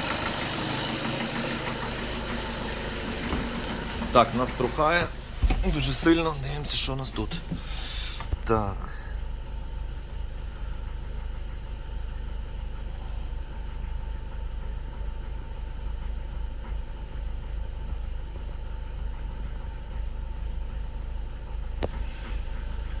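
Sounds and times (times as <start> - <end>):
diesel engine idling roughly: 0.0 - 15.6.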